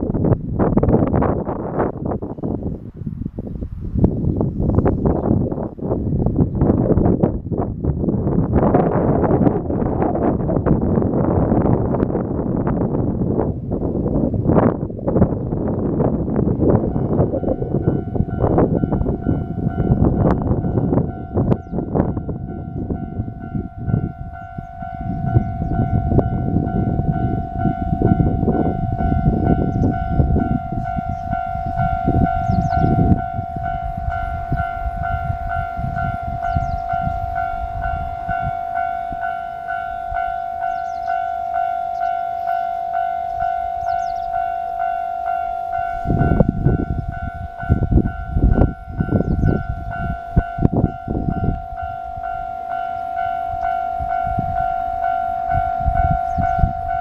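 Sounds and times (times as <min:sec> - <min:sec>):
level crossing bell ringing: 0:17.0 - 0:57.0.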